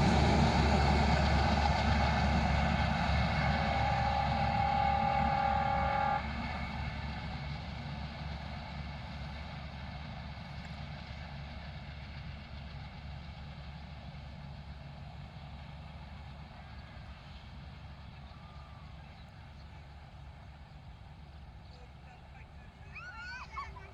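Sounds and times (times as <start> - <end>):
train horn: 0.0 - 7.0
train running rumble: 0.0 - 23.9.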